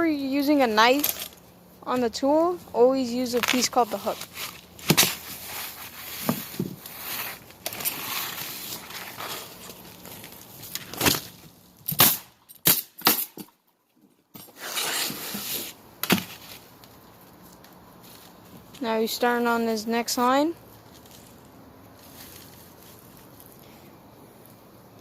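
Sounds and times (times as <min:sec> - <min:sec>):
rustling scraping on shingles: 0:03.4 - 0:11.4, 0:14.5 - 0:18.8.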